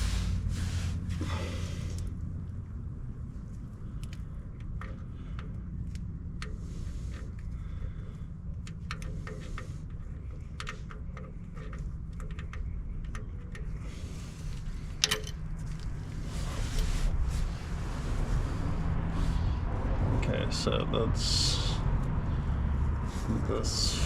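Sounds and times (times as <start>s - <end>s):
low rumble: 0.0s - 24.0s.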